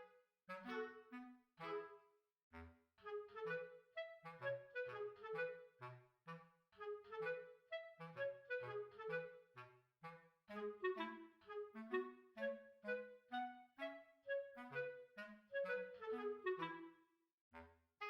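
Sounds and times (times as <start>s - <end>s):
woodwind melody: 0.0s - 17.1s.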